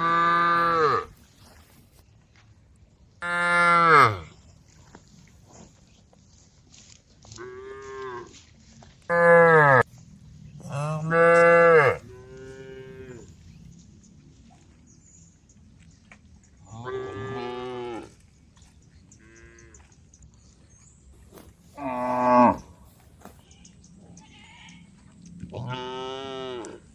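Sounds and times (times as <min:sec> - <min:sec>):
cows mooing: 0:00.0 - 0:01.2, 0:03.2 - 0:04.3, 0:10.6 - 0:13.3, 0:16.7 - 0:18.1, 0:21.8 - 0:22.8, 0:25.5 - 0:26.9.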